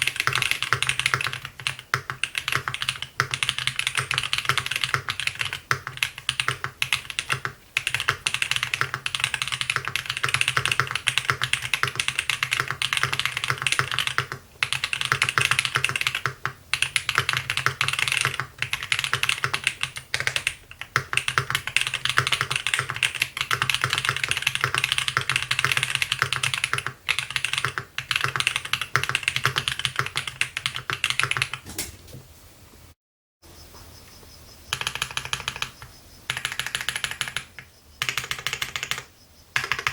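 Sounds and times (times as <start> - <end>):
fast typing on mechanical keyboard: 0.0 - 31.6, 34.7 - 39.9.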